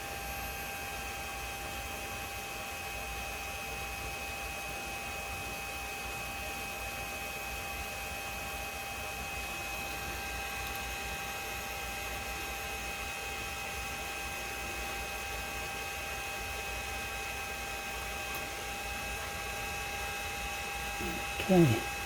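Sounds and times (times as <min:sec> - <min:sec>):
milling machine whine: 0:06.4 - 0:22.0.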